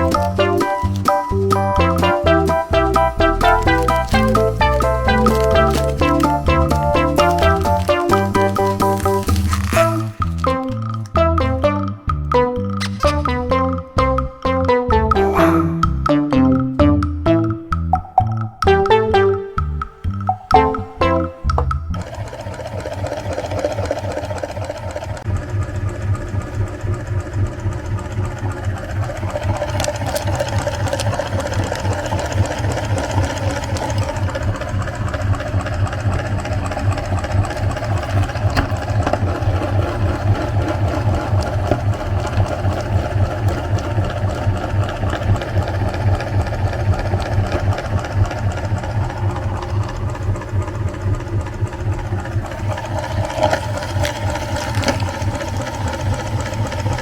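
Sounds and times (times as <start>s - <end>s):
electric meat grinder running: 0.0s - 10.4s, 22.0s - 57.0s.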